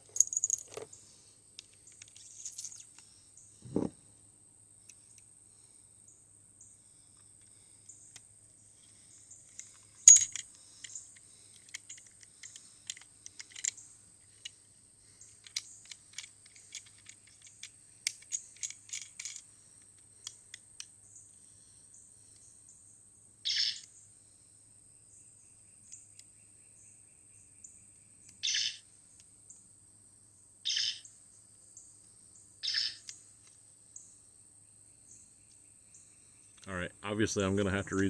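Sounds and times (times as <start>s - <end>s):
plastic toy clicks and rattles: 9.5s - 14.5s, 15.3s - 19.5s.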